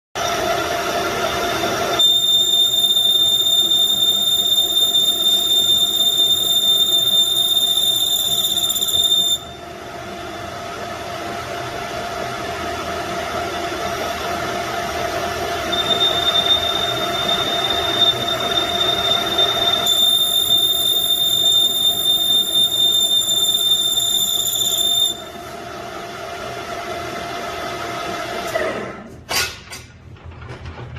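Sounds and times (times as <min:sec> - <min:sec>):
machinery running with whine: 0:00.2 - 0:29.0
high metallic squeal: 0:02.0 - 0:09.6, 0:15.7 - 0:25.2.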